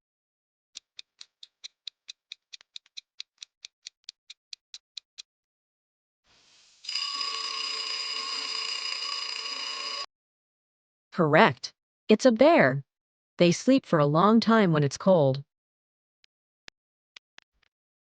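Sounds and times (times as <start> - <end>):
clock-like timer ticking: 0.8 - 5.3.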